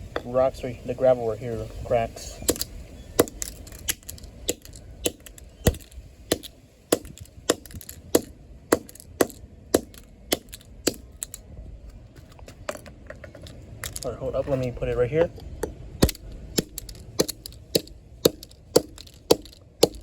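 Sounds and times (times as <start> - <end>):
hammer knocking on phone pieces: 2.5 - 11.4, 15.6 - 20.0.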